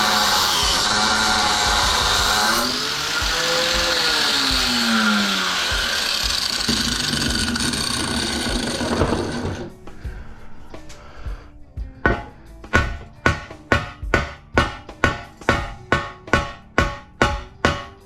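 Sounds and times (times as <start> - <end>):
power tool cutting metal: 0.0 - 9.8.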